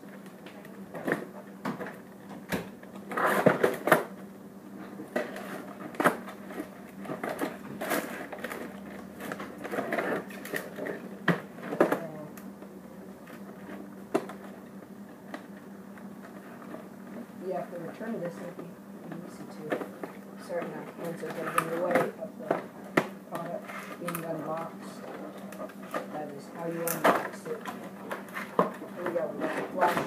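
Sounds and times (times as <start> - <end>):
steady low hum: 0.0 - 30.0
packaging crinkling and rustling: 4.9 - 12.1.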